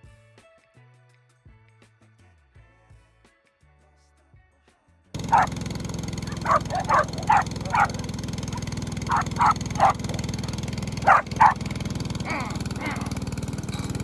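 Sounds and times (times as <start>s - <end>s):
dog barking: 5.2s - 5.6s, 6.2s - 13.9s
engine running: 5.2s - 14.0s.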